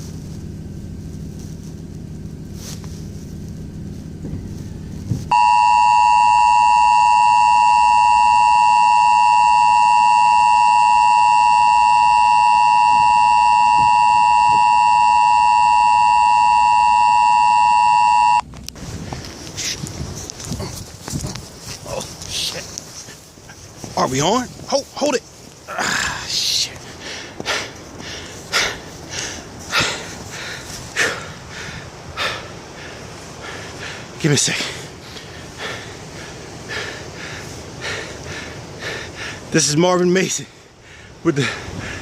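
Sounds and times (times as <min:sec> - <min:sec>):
low rumbling noise: 0:00.0 - 0:39.6
two-tone electronic alert tone: 0:05.3 - 0:18.4.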